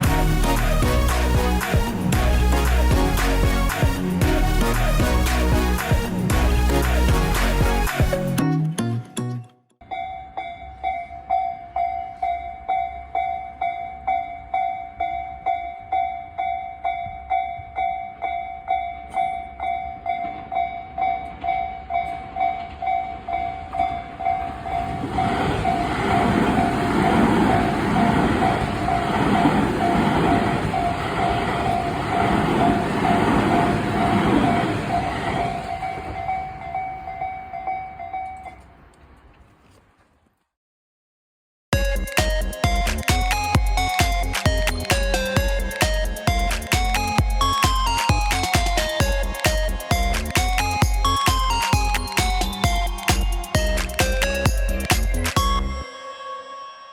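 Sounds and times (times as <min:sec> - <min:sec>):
train rumbling past: 0:00.0 - 0:08.0, 0:09.9 - 0:39.5
level crossing bell ringing: 0:42.0 - 0:56.9.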